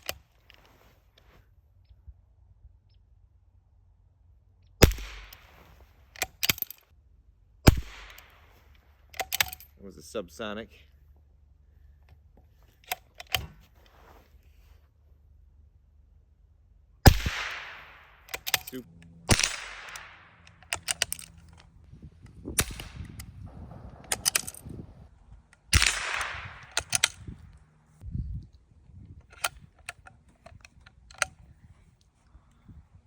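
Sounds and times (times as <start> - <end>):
rifle shots: 4.8 - 5.5, 7.6 - 8.6, 17.0 - 21.2, 22.6 - 23.3, 25.7 - 27.2
rifle bolt clicking: 6.2 - 6.8, 9.1 - 9.7, 17.1 - 21.7, 25.6 - 27.2.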